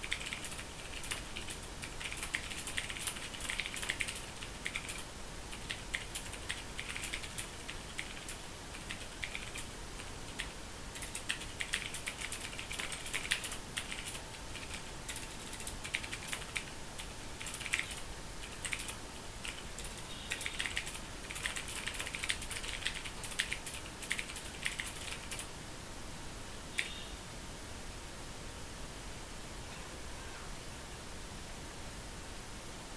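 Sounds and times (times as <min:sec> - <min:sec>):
mechanical keyboard typing: 0:00.0 - 0:25.5.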